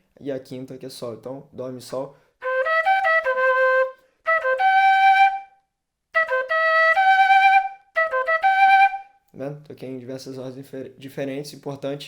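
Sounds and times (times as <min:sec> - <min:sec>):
flute playing quick notes: 0:02.4 - 0:05.6, 0:06.2 - 0:09.1.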